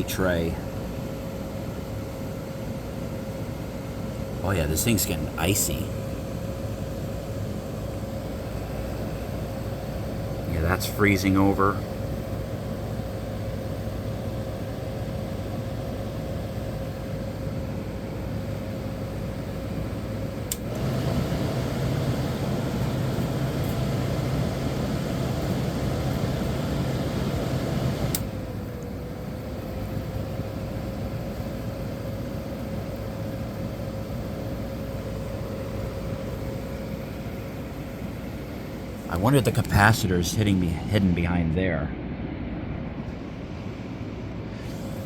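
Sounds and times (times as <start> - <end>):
air conditioner humming: 0.0 - 45.0
switch click: 20.5 - 20.8.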